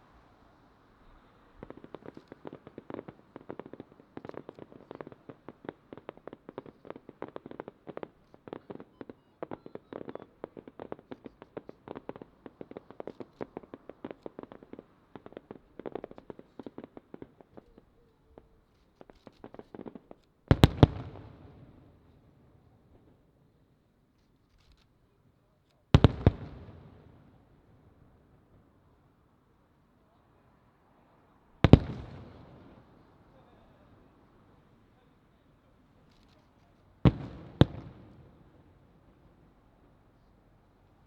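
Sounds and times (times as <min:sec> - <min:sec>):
fireworks pops and bangs: 0:00.0 - 0:41.0
heavy fireworks booms: 0:19.4 - 0:23.2, 0:26.0 - 0:28.7, 0:31.5 - 0:35.4, 0:36.0 - 0:39.5.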